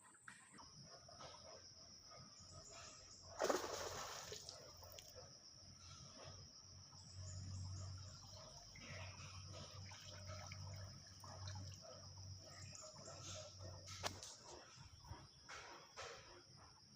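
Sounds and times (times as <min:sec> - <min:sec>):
water splashes and drips: 0:03.4 - 0:05.1, 0:08.0 - 0:14.3.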